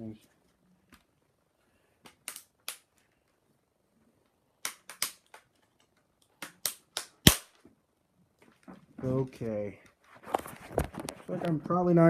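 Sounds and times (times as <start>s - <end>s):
plastic clicks and snaps of laptop: 2.0s - 3.4s, 4.6s - 7.6s.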